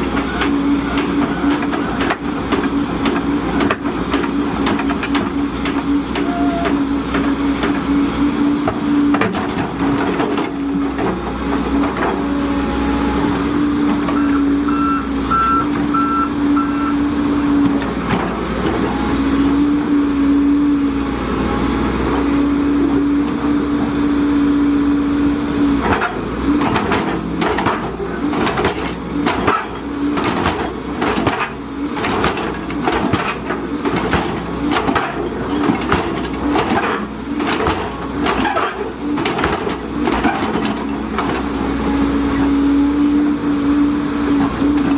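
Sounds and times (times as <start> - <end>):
excavator engine and hydraulics: 0.0 - 44.9
warning alarm beeps: 14.2 - 17.1.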